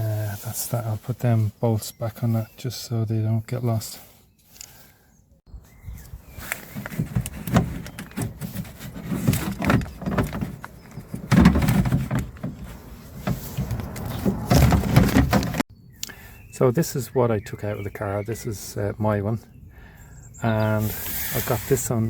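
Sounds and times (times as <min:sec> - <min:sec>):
handling rustle: 0:05.7 - 0:15.6
clicks and rattles of parts: 0:06.4 - 0:15.6.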